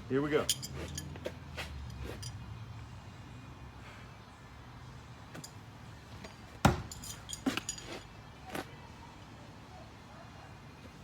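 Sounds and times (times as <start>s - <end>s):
light metallic clinks: 0.3s - 2.5s, 5.3s - 5.6s, 6.2s - 8.1s.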